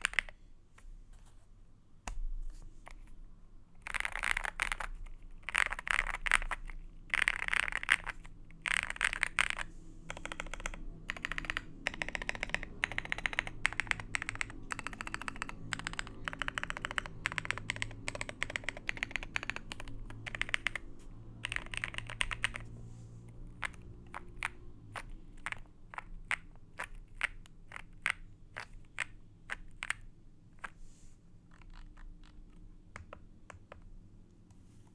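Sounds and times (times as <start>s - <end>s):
mechanical keyboard typing: 0.0s - 0.4s, 3.8s - 22.7s, 23.6s - 30.8s.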